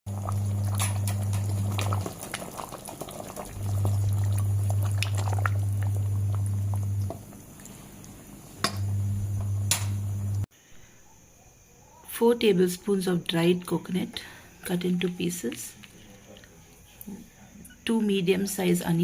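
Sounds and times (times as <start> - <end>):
crackles and pops: 0.1 - 10.5
food sizzling in a pan: 0.1 - 10.5.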